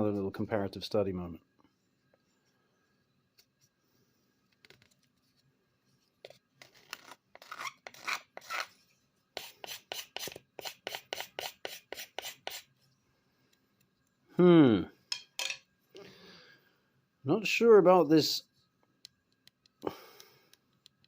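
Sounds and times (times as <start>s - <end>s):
knife blade scraping on sharpener: 9.4s - 12.7s.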